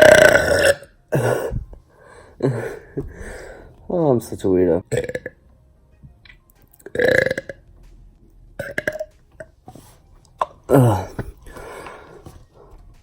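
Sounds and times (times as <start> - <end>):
man burping: 0.0 - 1.7, 4.9 - 5.4, 6.9 - 7.6, 8.6 - 9.1, 10.4 - 11.4
breathy noise: 1.1 - 3.9, 9.7 - 13.0.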